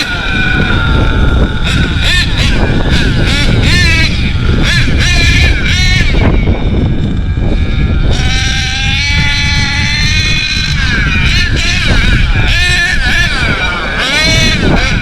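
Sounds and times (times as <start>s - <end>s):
rc truck nitro engine whining: 0.0s - 15.0s.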